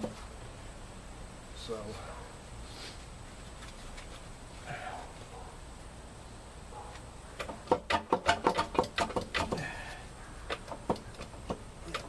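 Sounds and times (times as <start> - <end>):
sharp metallic knocks: 7.4 - 9.7.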